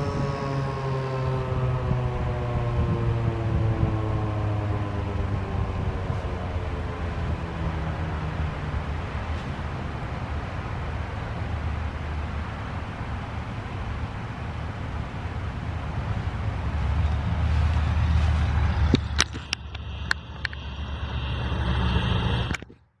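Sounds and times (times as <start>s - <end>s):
rumble of passing vehicles: 0.0s - 22.7s
sharp clicks: 18.9s - 20.7s.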